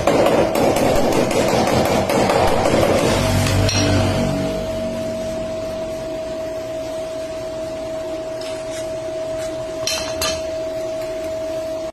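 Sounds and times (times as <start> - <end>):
machine humming: 0.0 - 11.9.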